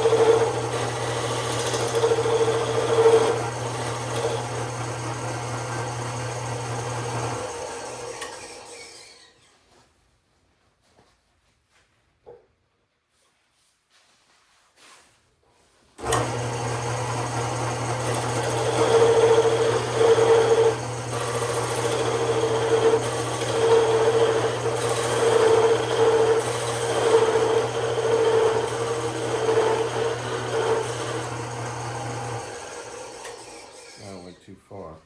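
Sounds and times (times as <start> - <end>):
power tool motor running: 0.0 - 9.3, 16.0 - 34.4.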